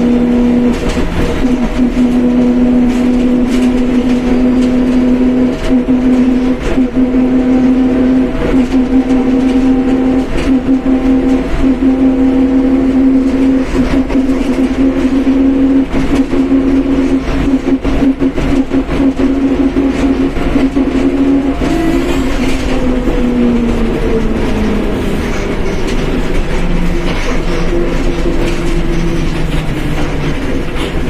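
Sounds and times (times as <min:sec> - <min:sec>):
bus differential whine: 0:00.0 - 0:31.0
bus rumble and rattle: 0:00.0 - 0:31.0.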